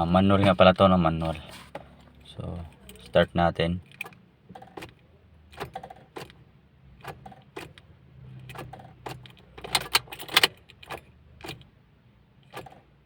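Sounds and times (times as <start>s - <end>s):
car keys jangling: 0.1s - 3.2s, 3.8s - 6.4s, 7.0s - 11.7s
ignition key clicks: 7.0s - 11.7s.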